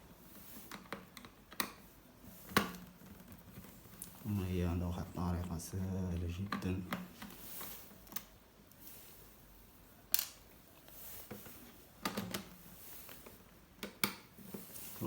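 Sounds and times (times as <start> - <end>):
plastic laptop parts clicking: 0.7 - 1.8.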